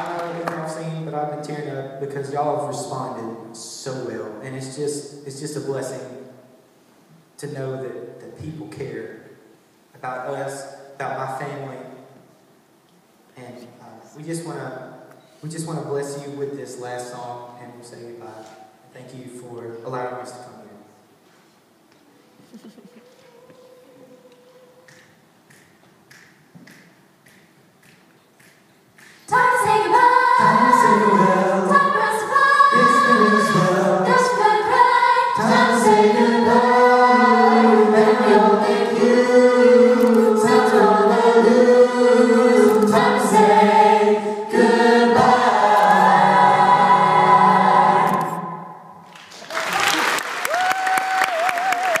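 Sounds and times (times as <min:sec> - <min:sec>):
vocal group singing in harmony: 0:29.3 - 0:49.0.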